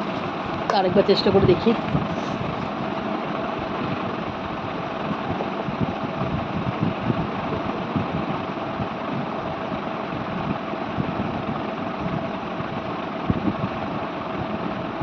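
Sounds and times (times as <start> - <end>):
machine hum: 0.0 - 15.0.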